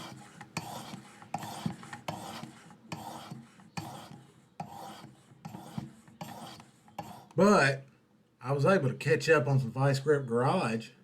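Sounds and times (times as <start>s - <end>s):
knife rasping on sharpening stone: 0.0s - 7.4s.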